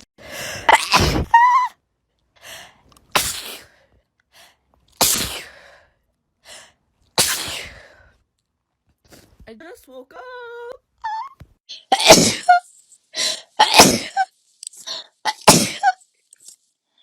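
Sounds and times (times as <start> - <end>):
person sneezing: 0.7 - 1.5, 3.1 - 3.7, 5.0 - 5.6, 7.2 - 7.8, 11.9 - 12.6, 13.6 - 14.3, 15.3 - 16.0.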